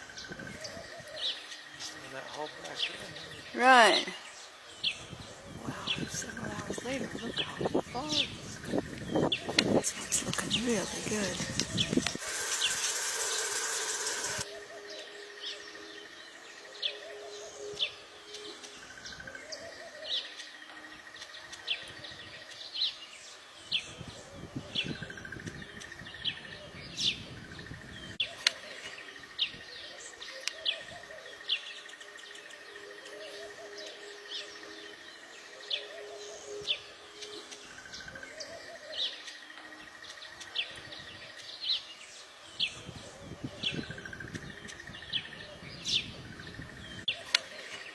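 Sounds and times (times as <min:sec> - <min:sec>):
birds chirping: 0:00.0 - 0:47.9.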